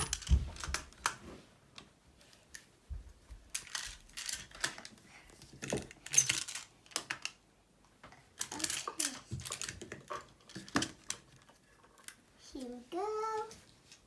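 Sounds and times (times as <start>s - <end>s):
plastic tiles clicking and clattering: 3.5s - 7.4s, 8.3s - 12.2s.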